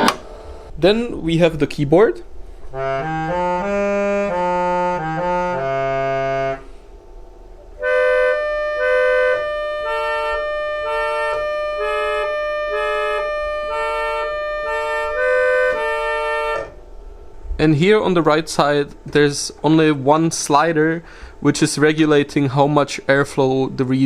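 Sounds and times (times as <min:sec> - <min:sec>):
electric organ chord: 0:00.0 - 0:17.5
reedy keyboard melody: 0:00.0 - 0:20.3
organ blower motor hum: 0:00.0 - 0:22.6.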